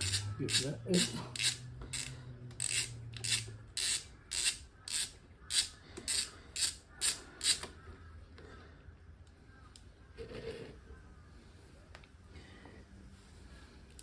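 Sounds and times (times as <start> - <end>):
ratchet wrench buzzing: 0.0 - 7.7.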